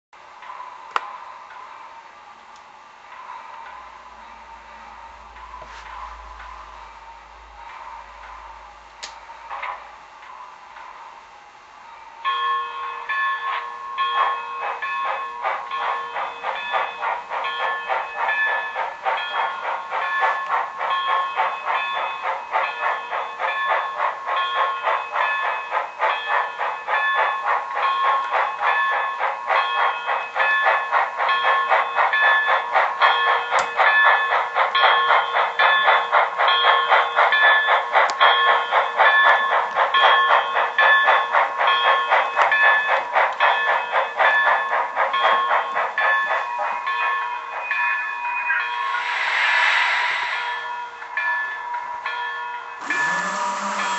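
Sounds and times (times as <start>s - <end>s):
steam locomotive chuffing: 12.2s - 53.9s.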